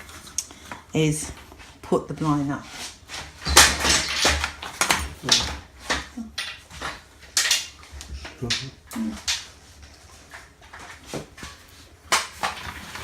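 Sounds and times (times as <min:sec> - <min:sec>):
wooden blind slats clattering: 0:03.1 - 0:13.0.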